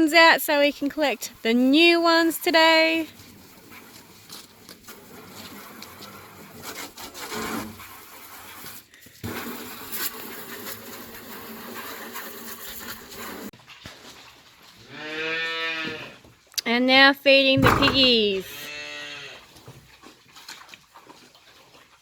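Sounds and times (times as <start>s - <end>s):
bins being scrubbed: 0.0s - 14.2s, 17.5s - 18.6s
knocks and clicks: 17.5s - 18.4s.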